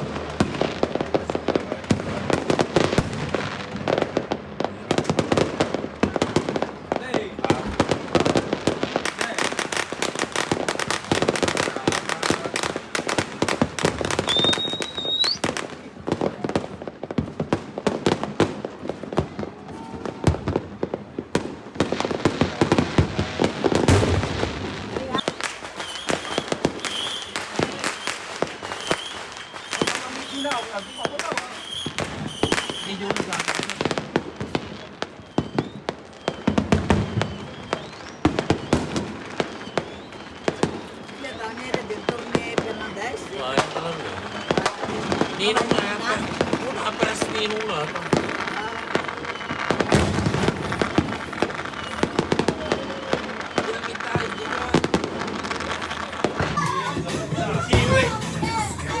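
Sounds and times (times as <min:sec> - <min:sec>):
firecrackers popping: 0:00.0 - 0:59.0
firework whistle: 0:09.0 - 0:15.9, 0:23.4 - 0:33.9, 0:34.5 - 0:59.0
faint high wavering whistle: 0:14.3 - 0:15.4.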